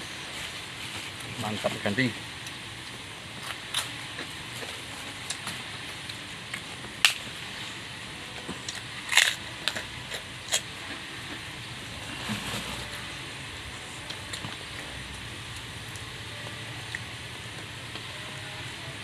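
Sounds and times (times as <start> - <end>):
chewing crisp food: 8.6 - 11.5.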